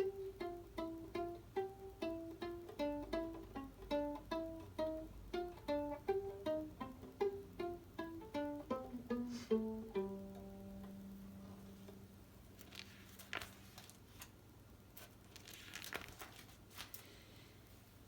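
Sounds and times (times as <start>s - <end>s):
plucked string notes: 0.0s - 12.2s.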